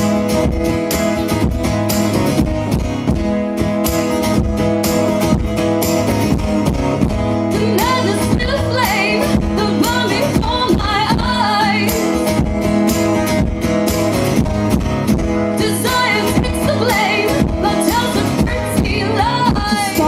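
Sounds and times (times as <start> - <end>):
guitar playing: 0.0 - 20.0
person singing: 7.5 - 12.1.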